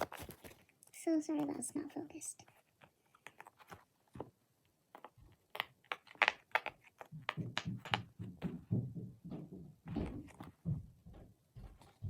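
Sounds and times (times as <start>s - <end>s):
dull thumps: 7.1s - 12.0s.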